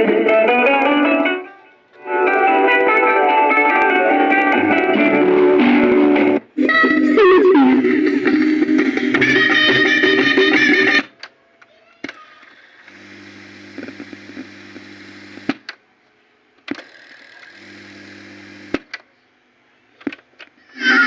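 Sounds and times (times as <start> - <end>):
tape motor hum and hiss: 6.5 - 11.2, 12.2 - 15.8, 16.4 - 19.1.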